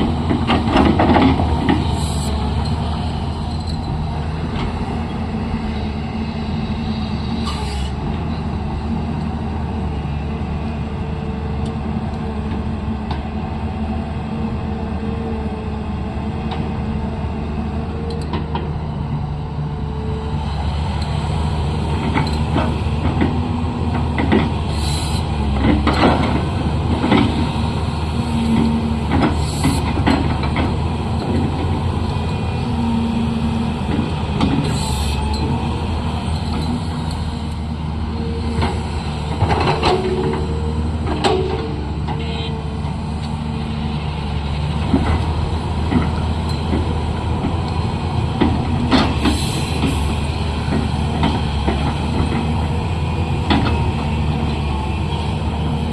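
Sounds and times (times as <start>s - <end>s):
knocks and clanks: 0.0s - 2.0s, 22.0s - 24.6s, 38.5s - 42.3s, 44.7s - 52.6s, 53.4s - 53.8s
diesel engine working: 0.0s - 55.9s.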